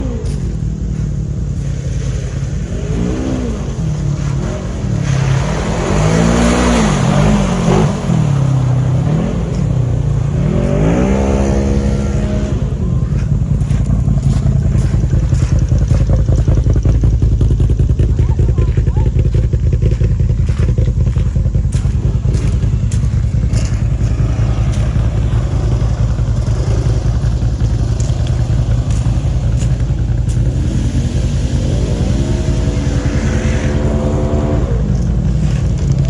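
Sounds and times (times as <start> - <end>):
atv engine revving: 0.0 - 36.0.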